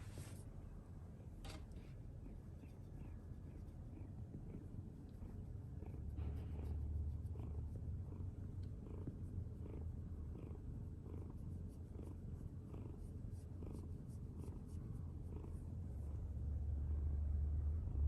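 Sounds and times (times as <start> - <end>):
cat purring: 2.2 - 17.2.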